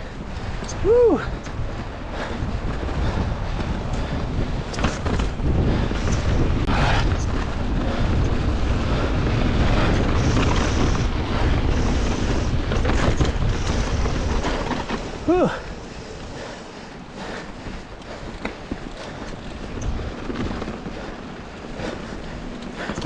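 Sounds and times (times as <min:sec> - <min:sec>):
tyres rolling over loose dirt: 0:00.0 - 0:23.0
wind buffeting microphone: 0:00.0 - 0:23.0.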